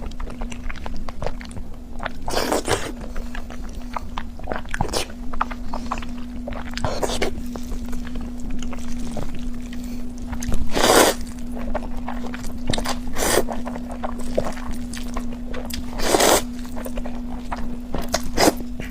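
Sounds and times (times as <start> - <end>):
steady low hum: 0.0 - 18.9
noodle slurping: 8.8 - 15.0, 15.7 - 18.9.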